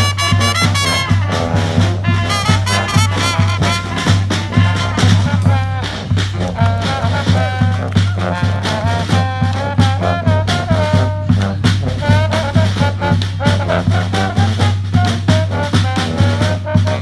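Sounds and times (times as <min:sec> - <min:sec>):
brass band playing swing tune: 0:00.0 - 0:17.0.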